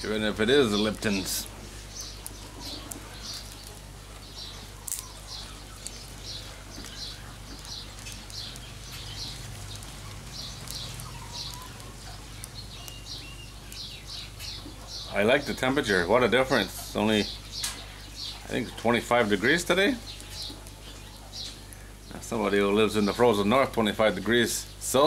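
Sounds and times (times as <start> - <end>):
small bird chirping: 0.0 - 24.9
steady low hum: 0.0 - 25.0.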